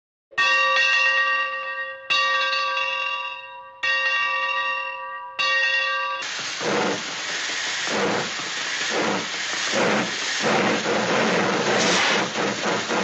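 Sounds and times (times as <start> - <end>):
loud hiss: 6.2 - 13.0.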